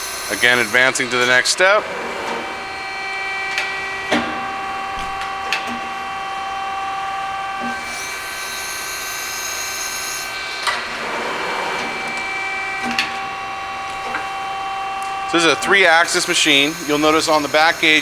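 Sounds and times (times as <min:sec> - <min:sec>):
hydraulic drive whine: 0:00.0 - 0:18.0.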